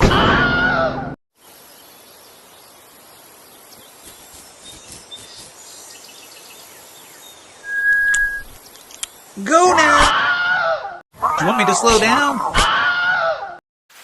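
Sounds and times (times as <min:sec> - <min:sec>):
faint bird chirps: 0:01.6 - 0:09.4.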